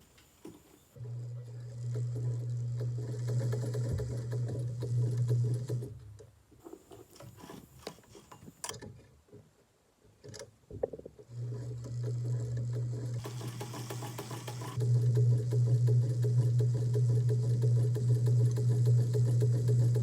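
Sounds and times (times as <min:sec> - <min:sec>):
sewing machine stitching: 0:01.0 - 0:06.0, 0:11.3 - 0:20.0.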